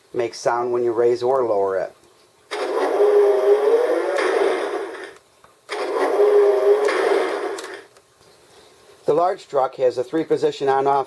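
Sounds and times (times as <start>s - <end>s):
toy speaker whirring hum: 2.5s - 7.9s.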